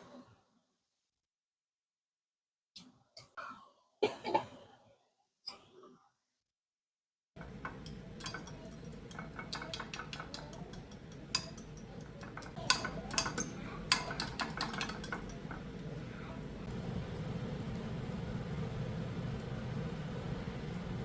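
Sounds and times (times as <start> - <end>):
dishes and cutlery clinking: 7.4 - 16.2
steady low hum: 7.4 - 21.0.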